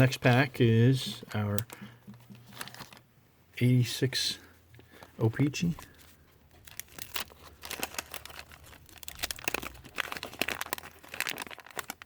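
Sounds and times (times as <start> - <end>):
wrapper crinkling and tearing: 2.4 - 3.0, 5.7 - 12.0.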